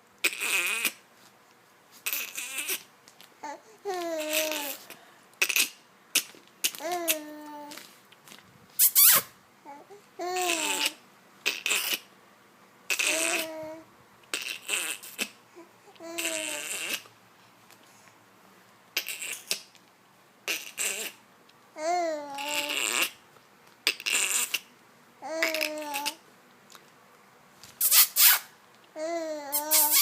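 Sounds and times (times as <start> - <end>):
high babbling cries: 29.0 - 30.0
man making sputtering mouth noises: 29.5 - 30.0.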